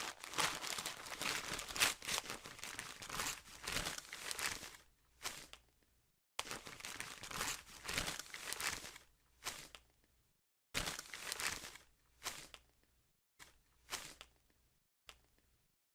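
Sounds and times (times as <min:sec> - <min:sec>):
wrapping paper tearing and rustling: 0:00.0 - 0:05.5, 0:06.4 - 0:09.7, 0:10.8 - 0:12.5.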